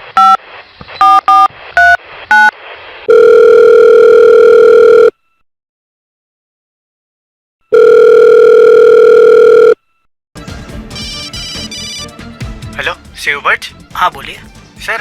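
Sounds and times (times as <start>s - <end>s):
telephone ringing tone: 3.1s - 5.4s, 7.6s - 10.0s.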